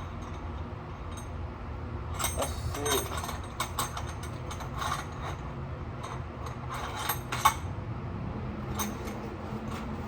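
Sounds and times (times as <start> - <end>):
metal hand tools clinking: 2.2 - 5.4.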